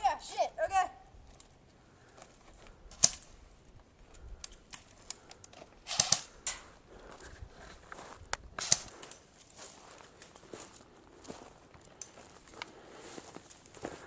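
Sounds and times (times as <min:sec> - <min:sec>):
airsoft guns firing: 0:05.8 - 0:06.6, 0:08.6 - 0:09.1.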